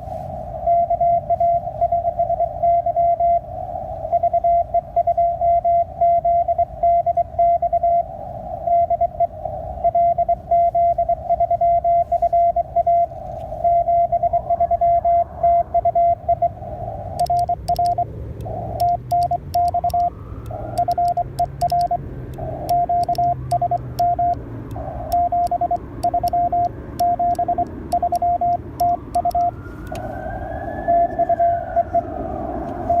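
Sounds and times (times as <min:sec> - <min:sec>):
morse code tone: 0:00.6 - 0:03.4, 0:04.1 - 0:08.1, 0:08.7 - 0:30.0, 0:30.9 - 0:31.5
sharp keying clicks: 0:17.2 - 0:30.0.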